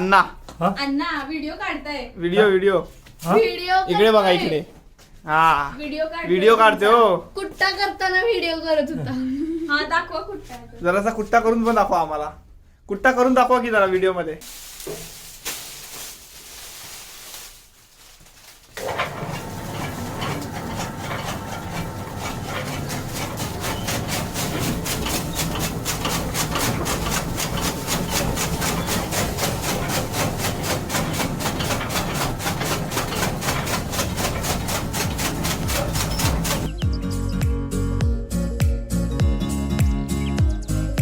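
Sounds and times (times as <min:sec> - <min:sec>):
chaff cutter chopping: 0:18.8 - 0:36.8.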